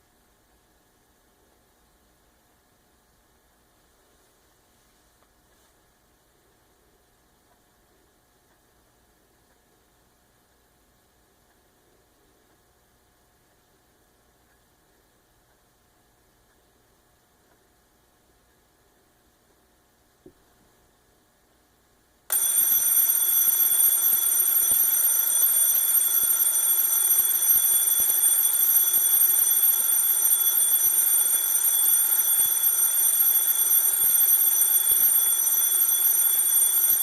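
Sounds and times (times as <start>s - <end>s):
alarm clock shrill tone: 22.3s - 37.0s.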